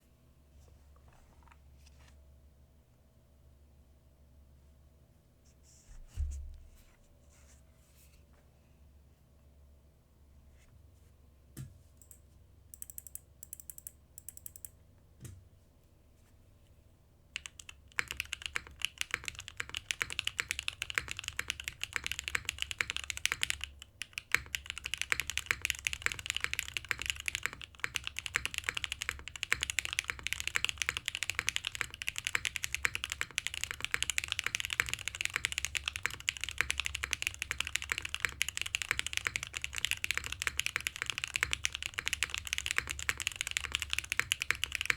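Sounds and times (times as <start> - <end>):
mechanical keyboard typing: 12.8 - 14.7, 17.4 - 44.9.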